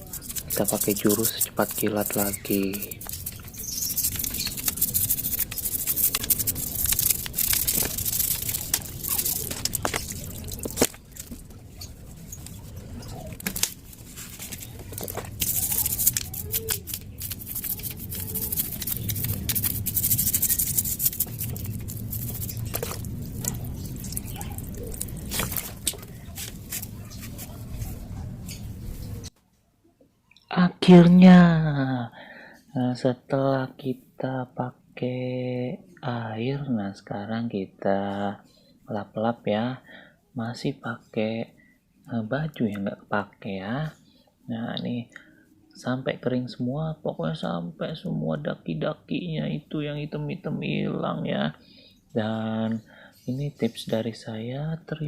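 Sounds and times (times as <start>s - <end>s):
brush scrubbing metal: 0.0s - 11.2s, 13.3s - 28.0s
water splashing: 19.2s - 26.9s.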